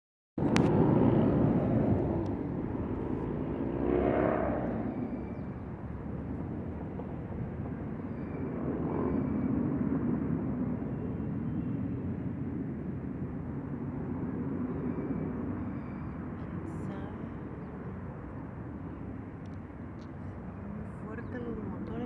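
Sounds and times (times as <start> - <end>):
cars passing: 0.4 - 7.6
low rumble from the sky: 0.4 - 22.0.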